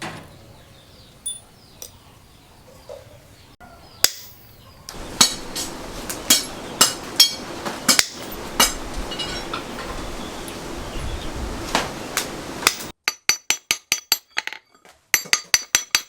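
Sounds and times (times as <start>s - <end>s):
hammer striking steel: 4.0s - 9.8s, 12.6s - 14.6s.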